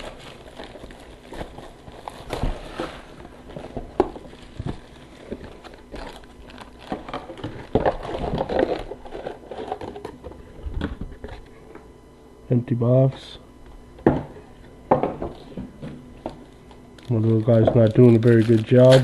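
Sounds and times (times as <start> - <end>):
plastic shrink-wrap crinkling: 0.0 - 10.2, 16.4 - 19.0.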